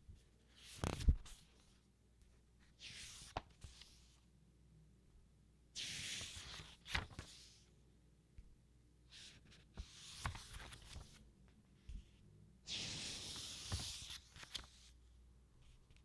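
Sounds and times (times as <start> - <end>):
book pages rustling as turned: 0.5 - 1.8, 2.8 - 4.2, 5.8 - 7.6, 9.2 - 11.2, 12.7 - 15.0.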